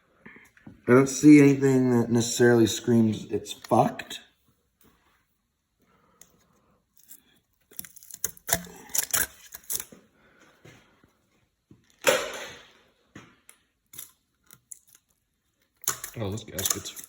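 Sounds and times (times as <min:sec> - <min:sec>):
clicks and knocks of metal tools: 0:15.8 - 0:17.0.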